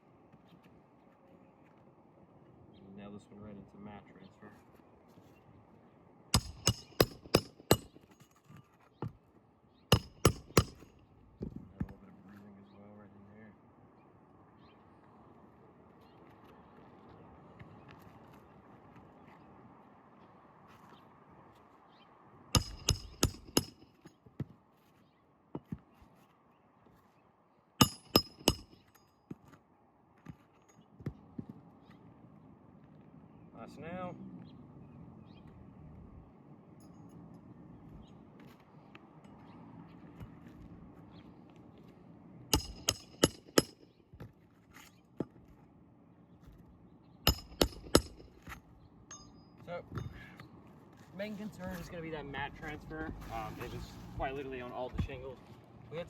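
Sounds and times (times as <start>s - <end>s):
hammer driving nails: 6.4s - 8.3s, 9.9s - 10.9s, 22.6s - 24.0s, 27.8s - 29.0s, 42.5s - 43.8s, 47.3s - 49.2s.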